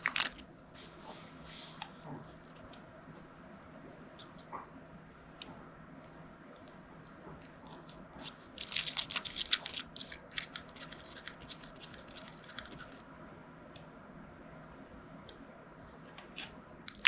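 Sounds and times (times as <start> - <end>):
crinkling and crackling: 0.0 - 2.7, 5.4 - 13.1, 16.2 - 17.0.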